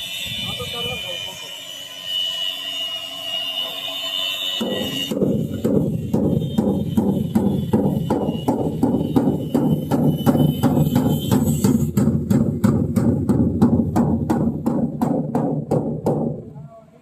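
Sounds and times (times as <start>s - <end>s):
background music with drum beat: 4.6s - 16.5s.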